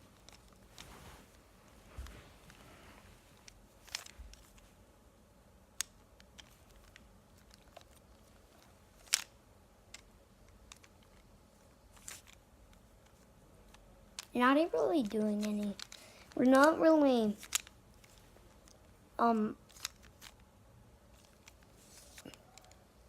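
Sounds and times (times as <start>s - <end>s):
faint plastic clicks: 5.8s - 14.4s, 15.0s - 16.8s, 21.1s - 23.0s.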